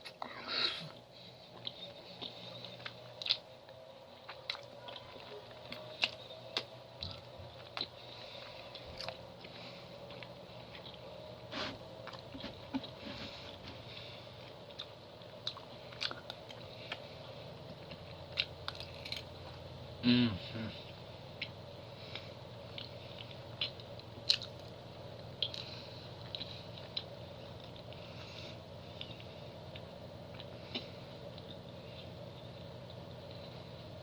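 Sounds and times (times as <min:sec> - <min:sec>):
faint steady hum: 0:00.0 - 0:34.0
person chewing and biting: 0:01.6 - 0:13.0, 0:14.5 - 0:19.6, 0:21.4 - 0:28.2.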